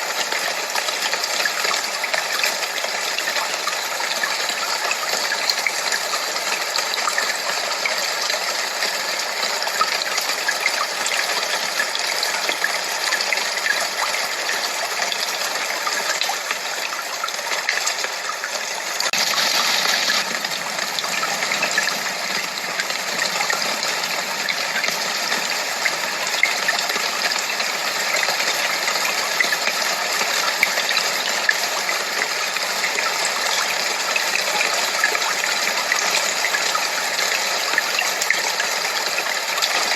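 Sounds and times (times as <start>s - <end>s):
steady rushing noise: 19.1s - 30.0s.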